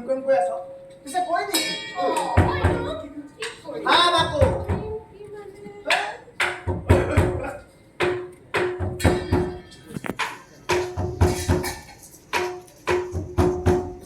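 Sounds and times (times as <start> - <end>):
hand drum playing: 2.0 - 3.1, 6.4 - 14.0.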